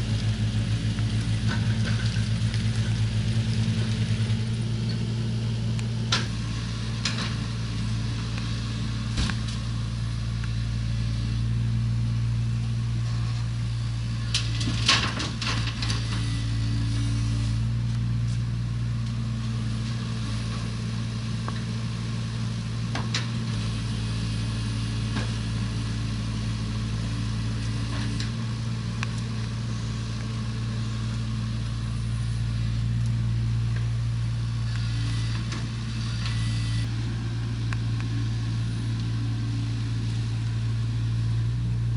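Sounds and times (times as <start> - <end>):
excavator diesel engine running: 0.0 - 41.9
knocks and scrapes of work: 1.3 - 3.0, 6.0 - 7.6, 14.2 - 18.5.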